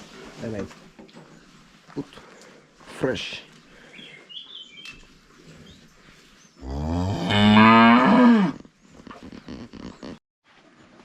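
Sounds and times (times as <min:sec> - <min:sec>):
cow mooing: 0:06.6 - 0:08.6.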